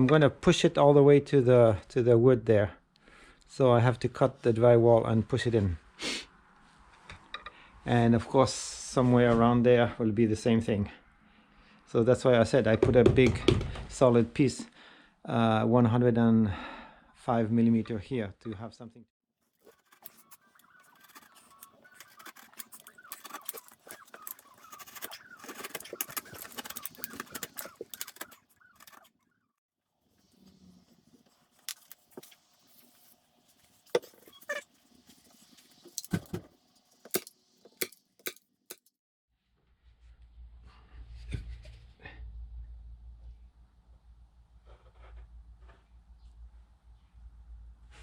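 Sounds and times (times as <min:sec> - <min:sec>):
objects clattering and rustling: 0:19.6 - 0:29.1, 0:30.5 - 0:38.8.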